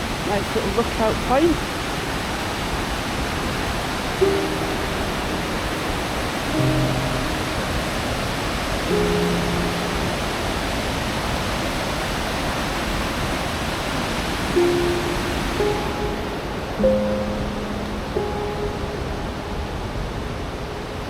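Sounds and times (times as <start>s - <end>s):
waterfall roaring: 0.0s - 21.0s
soft background music: 4.2s - 11.3s, 14.5s - 21.0s.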